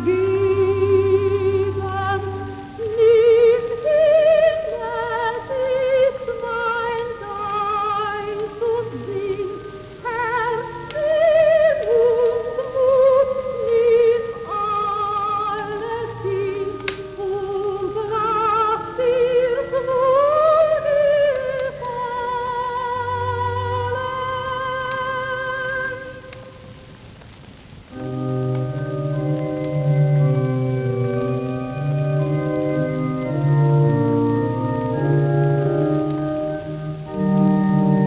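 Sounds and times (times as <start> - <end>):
choir and orchestra: 0.0 - 26.3
soprano singing with vibrato: 0.0 - 26.9, 28.0 - 38.0
record crackles: 0.0 - 38.0.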